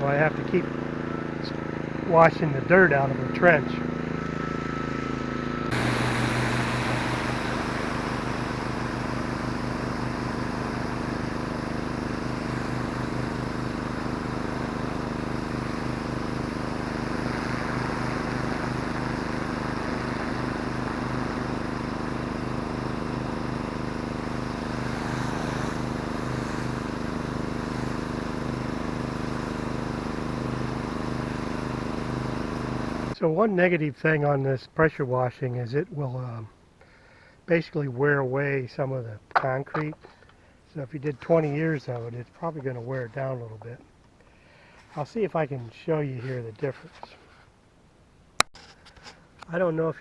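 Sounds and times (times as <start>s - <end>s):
pressure washer engine drone: 0.0s - 33.2s, 39.3s - 47.2s
water jet spraying concrete: 5.7s - 33.0s.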